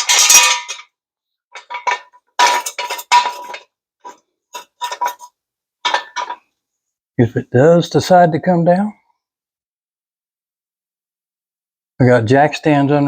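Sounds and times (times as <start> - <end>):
metal jack stands clanking: 1.6 - 6.4.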